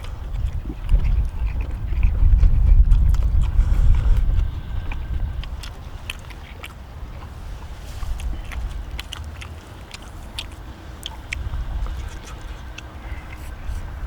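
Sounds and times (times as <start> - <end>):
people chewing: 0.0 - 14.0
steady low rumble: 0.0 - 14.0
wet mouth clicks and smacks: 0.0 - 14.0.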